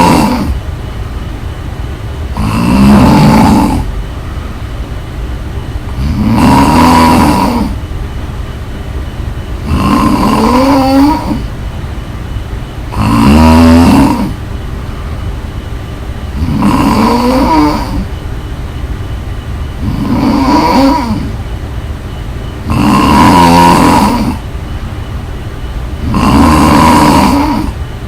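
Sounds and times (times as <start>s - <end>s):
person snoring loudly: 0.0s - 0.6s, 2.3s - 3.9s, 6.0s - 7.8s, 9.6s - 11.5s, 12.9s - 14.4s, 16.3s - 18.1s, 19.8s - 21.4s, 22.6s - 24.5s, 26.0s - 27.8s.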